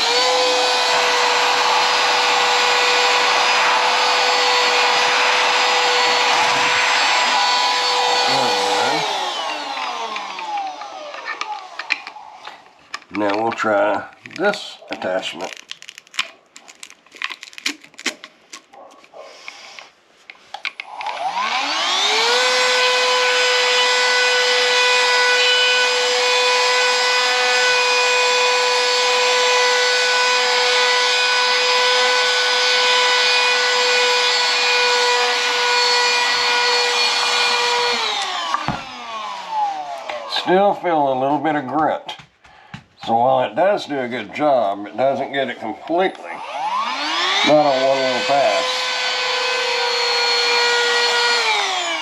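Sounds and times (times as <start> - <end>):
handheld vacuum cleaner whine: 0.0 - 13.6, 20.7 - 40.9, 45.8 - 52.0.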